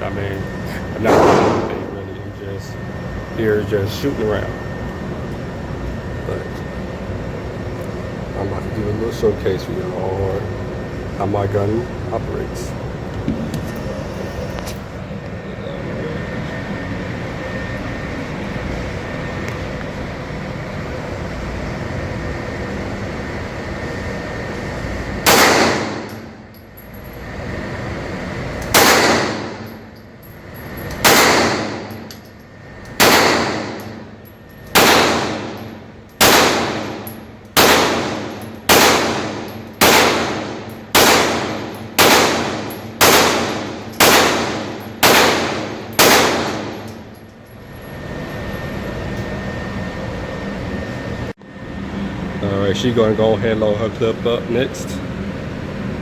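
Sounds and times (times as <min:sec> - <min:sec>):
steady background noise: 0:00.0 - 0:56.0
pistol shots with ringing tail: 0:01.0 - 0:02.0, 0:25.2 - 0:26.3, 0:28.7 - 0:29.8, 0:31.0 - 0:32.1, 0:33.0 - 0:34.1, 0:34.7 - 0:47.0.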